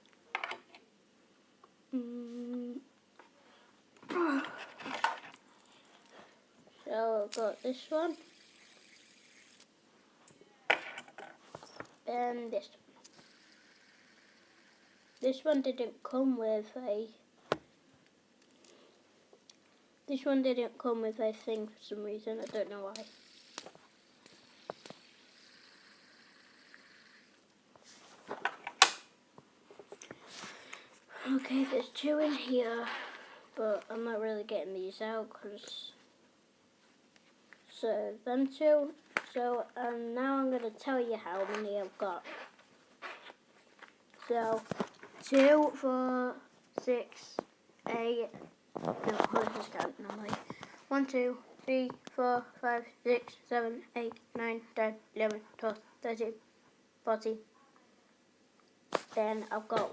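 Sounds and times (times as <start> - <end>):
person humming a note: 2.0 - 2.6.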